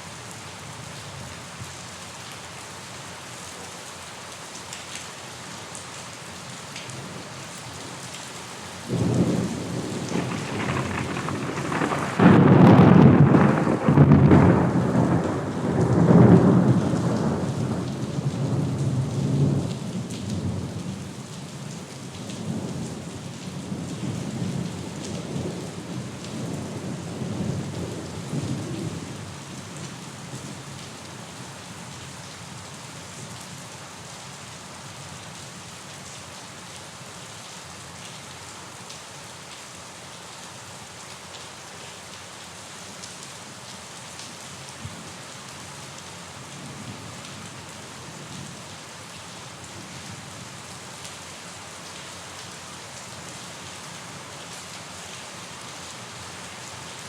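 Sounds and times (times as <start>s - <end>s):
steady rain: 0.0s - 57.0s
rolling thunder rumble: 8.9s - 19.7s.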